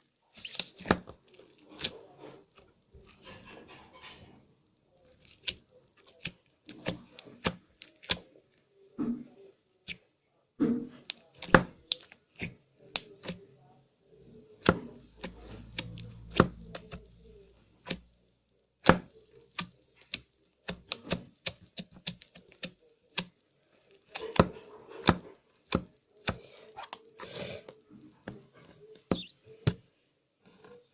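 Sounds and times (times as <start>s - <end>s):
slime clicking and popping: 5.2s - 8.3s, 11.1s - 13.4s, 14.6s - 17.1s, 18.8s - 23.4s.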